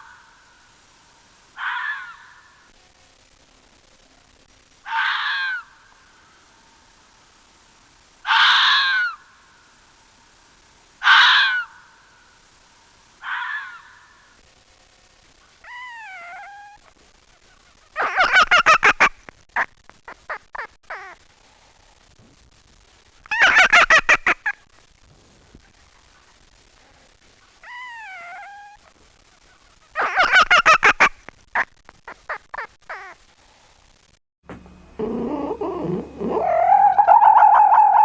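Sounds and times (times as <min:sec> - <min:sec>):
fox screaming: 0:01.6 - 0:02.5, 0:04.8 - 0:05.7, 0:08.2 - 0:09.2, 0:11.0 - 0:11.8, 0:13.2 - 0:14.1, 0:27.6 - 0:28.8, 0:35.0 - 0:38.0
fox yapping: 0:27.6 - 0:29.0, 0:35.0 - 0:38.0
fox whining call: 0:35.0 - 0:38.0.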